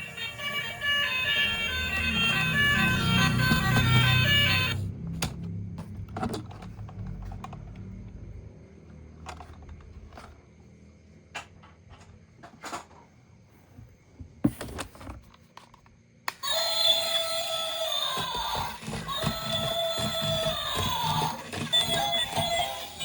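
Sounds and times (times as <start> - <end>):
music: 0.0 - 4.9, 16.4 - 23.0
toys clicking and knocking: 0.0 - 7.9, 14.5 - 23.0.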